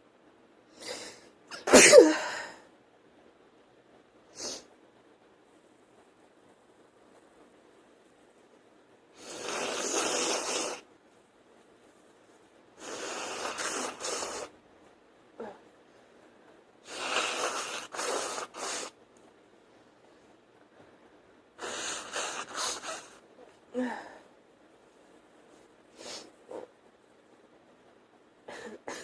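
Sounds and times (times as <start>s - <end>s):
woman blowing her nose: 9.2s - 10.8s, 12.8s - 14.5s, 16.8s - 19.0s, 21.6s - 23.2s.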